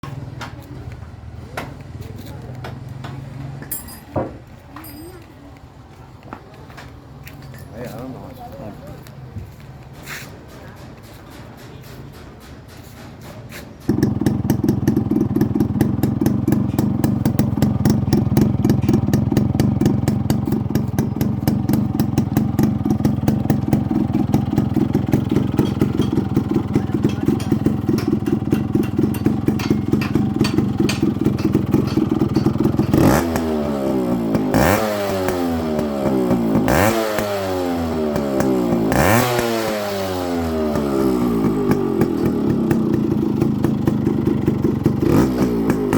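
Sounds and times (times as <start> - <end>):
motorcycle engine idling and revving: 0.0 - 11.4, 13.8 - 45.9.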